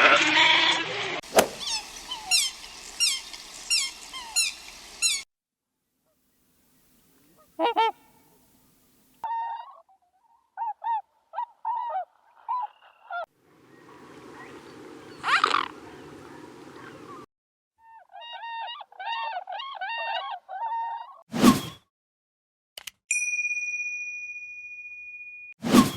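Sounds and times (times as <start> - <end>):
swans honking: 1.5 - 5.2, 7.0 - 8.4, 10.6 - 17.3.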